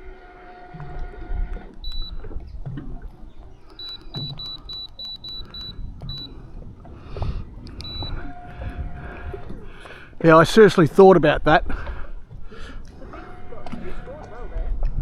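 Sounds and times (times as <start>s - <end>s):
high-pitched electronic beeps: 3.7s - 6.3s, 7.8s - 8.2s.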